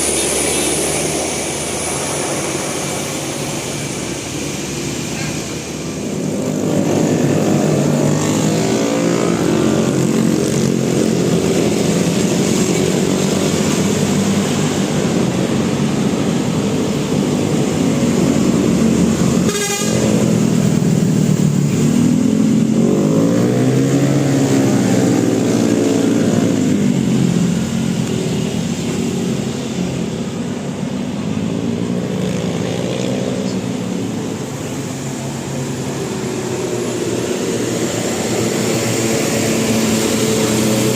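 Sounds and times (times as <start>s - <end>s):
buses driving past: 0.0s - 40.9s
bus horn tones: 19.4s - 20.3s.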